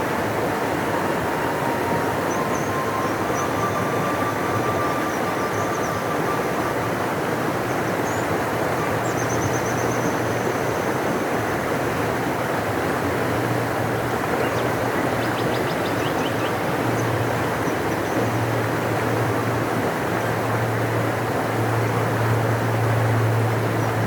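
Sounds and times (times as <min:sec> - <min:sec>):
river rushing: 0:00.0 - 0:24.0.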